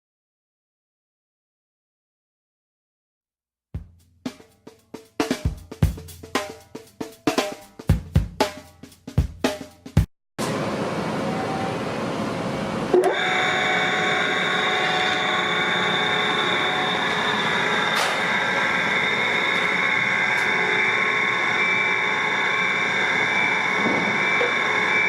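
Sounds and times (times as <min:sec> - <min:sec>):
food grinder motor whining: 0:12.9 - 0:25.0.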